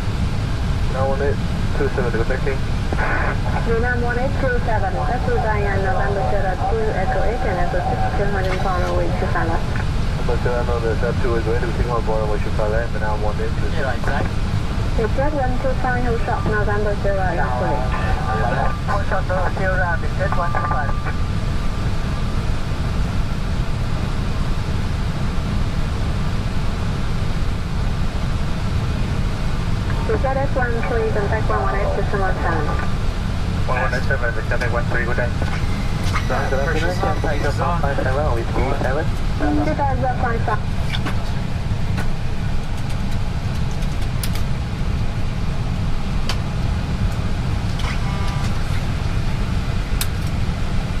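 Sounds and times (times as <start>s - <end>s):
cockpit rumble with hiss: 0.0s - 51.0s.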